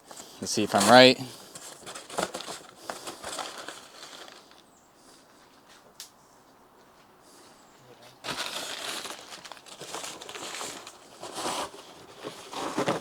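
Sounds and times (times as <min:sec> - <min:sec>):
packaging rustling and crinkling: 0:00.0 - 0:04.6, 0:08.2 - 0:13.0.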